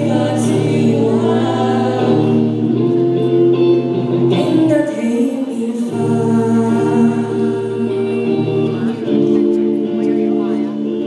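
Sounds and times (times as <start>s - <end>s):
choir singing sustained chords: 0.0s - 3.2s, 3.8s - 8.9s.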